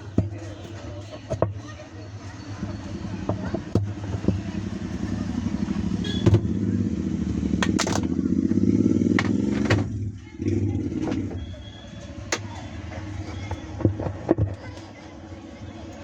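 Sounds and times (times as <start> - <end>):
sharp clicks and knocks: 7.6 - 8.2.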